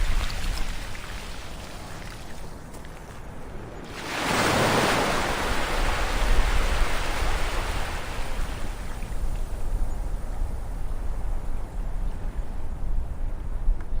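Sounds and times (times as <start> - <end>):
low rumble of surf: 0.0 - 14.0
wave surging on shore: 3.9 - 9.3.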